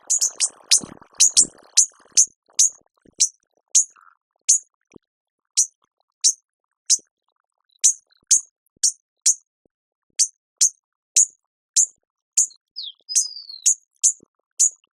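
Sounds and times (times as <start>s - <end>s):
hummingbird chip calls: 0.0s - 3.9s, 7.8s - 9.4s, 10.2s - 14.8s.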